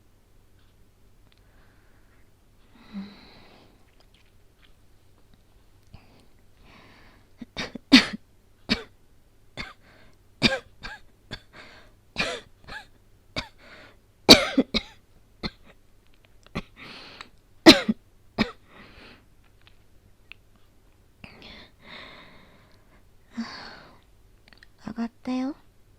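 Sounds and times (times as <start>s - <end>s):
woman coughing: 7.4s - 8.9s, 10.4s - 11.5s, 12.2s - 13.6s, 14.3s - 15.8s, 17.7s - 18.6s.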